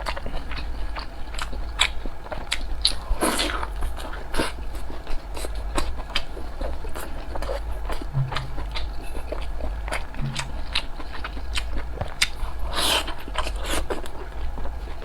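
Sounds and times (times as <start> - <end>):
steady low hum: 8.1 - 9.4, 10.2 - 11.1.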